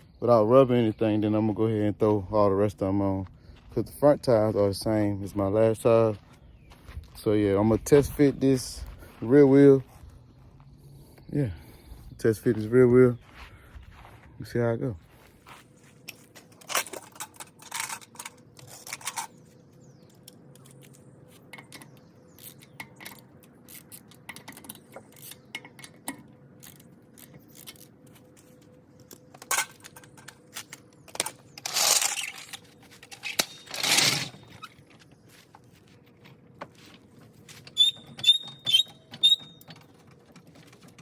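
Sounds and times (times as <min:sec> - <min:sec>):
faint hum: 0:00.0 - 0:37.6
metal tools clinking: 0:16.1 - 0:19.5, 0:29.3 - 0:34.8
metal scraping: 0:31.6 - 0:34.8.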